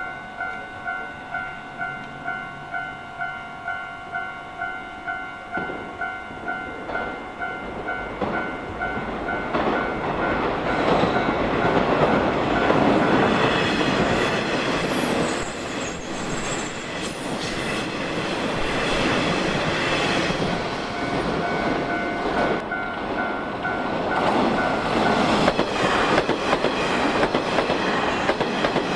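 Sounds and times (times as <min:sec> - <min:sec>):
railway crossing bell dinging: 0:00.0 - 0:27.2
high train whine: 0:00.0 - 0:28.9
train wheels clattering: 0:06.7 - 0:28.9.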